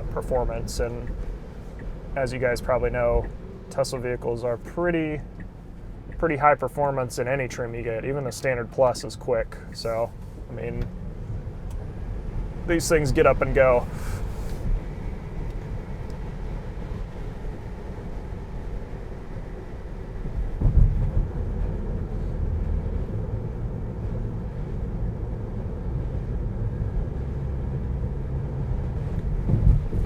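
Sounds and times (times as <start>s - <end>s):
road and tyre rumble in car cabin: 0.0s - 30.0s
car thumping over bump: 20.4s - 21.7s, 29.2s - 30.0s.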